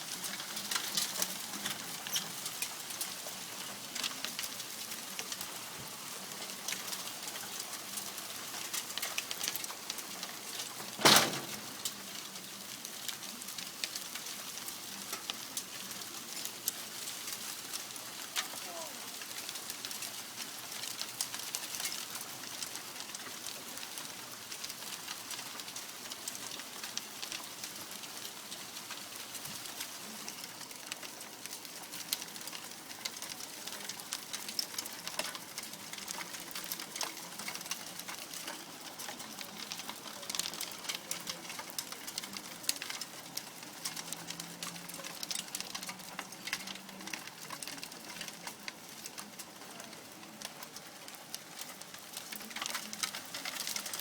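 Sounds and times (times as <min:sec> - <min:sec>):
hailstones hitting hard surface: 0:00.0 - 0:54.0.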